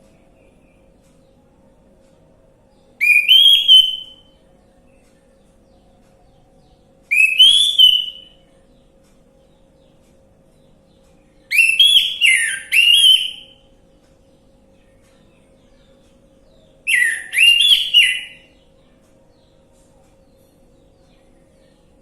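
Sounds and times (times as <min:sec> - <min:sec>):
thrush singing whistled notes: 0:03.0 - 0:04.3, 0:07.1 - 0:08.4, 0:11.5 - 0:13.6, 0:16.9 - 0:18.5.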